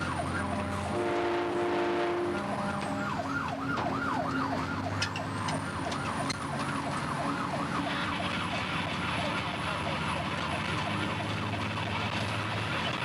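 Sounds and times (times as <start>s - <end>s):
air horn chord: 0.0s - 3.3s
truck engine rumble: 0.0s - 13.0s
siren yelping: 2.1s - 12.0s.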